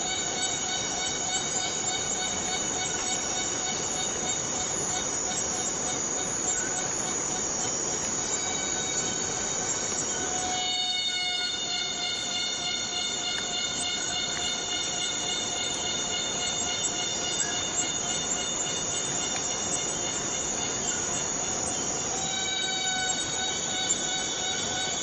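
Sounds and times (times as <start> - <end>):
cicadas buzzing: 0.0 - 25.0
high whining cicada tones: 0.0 - 25.0.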